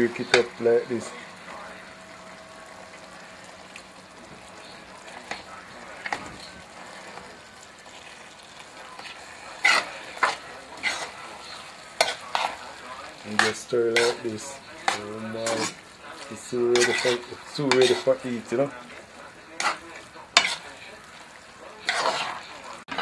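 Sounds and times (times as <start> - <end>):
fish sizzling in a pot: 0.0 - 23.0
spoon knocking and scraping pot: 16.7 - 18.1, 20.4 - 20.6.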